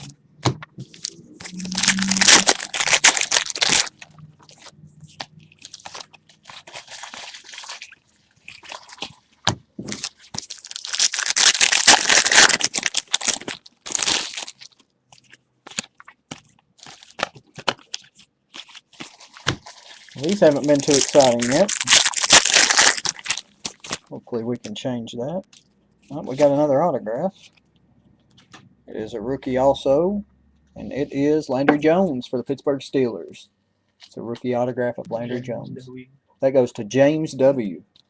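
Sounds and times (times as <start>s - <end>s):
card pack wrappers crinkling: 0.8s - 9.3s, 9.9s - 24.1s.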